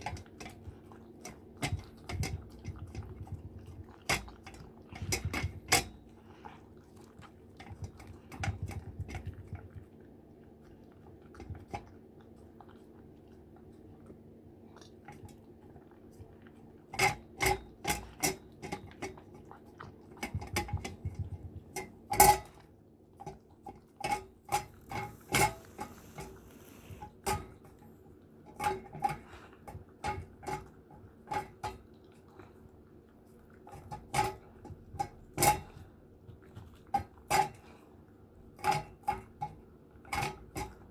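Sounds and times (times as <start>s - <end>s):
dog chewing: 0.0s - 28.0s
faint steady hum: 23.1s - 40.8s.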